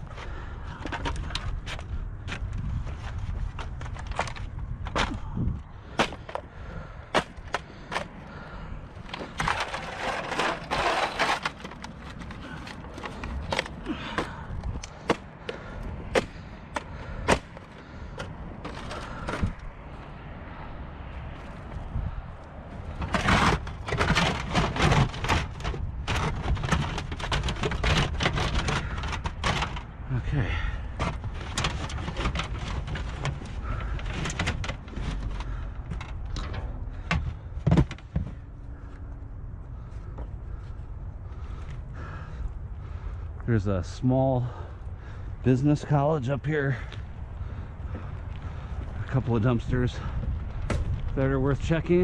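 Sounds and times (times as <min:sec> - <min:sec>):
irregular knocks and clatters: 0:22.9 - 0:29.9, 0:31.0 - 0:38.5.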